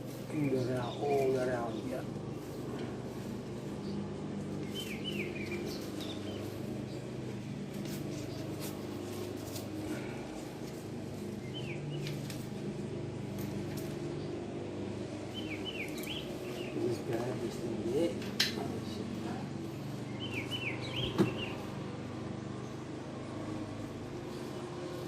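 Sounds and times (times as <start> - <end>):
small birds chirping: 0.0 - 25.0
steady low hum: 0.0 - 25.0
hands rustling rubber strip: 4.4 - 12.6.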